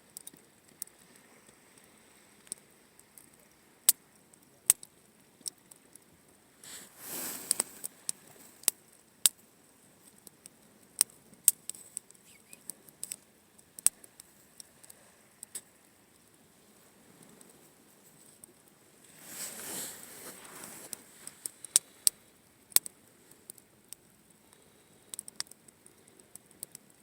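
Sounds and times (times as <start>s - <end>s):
campfire crackling and popping: 6.6s - 9.5s
fire whooshing: 6.7s - 8.6s.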